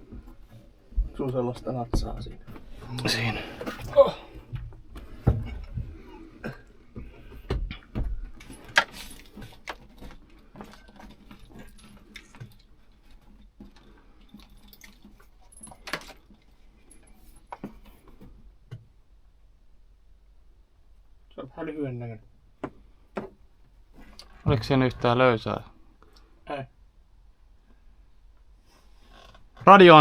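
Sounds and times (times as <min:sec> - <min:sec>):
low thumps: 0:00.0 - 0:02.9, 0:03.8 - 0:08.4, 0:24.4 - 0:25.2.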